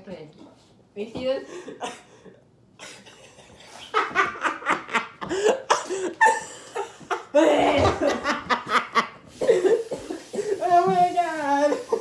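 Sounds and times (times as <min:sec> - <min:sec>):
people laughing: 0:01.6 - 0:10.3.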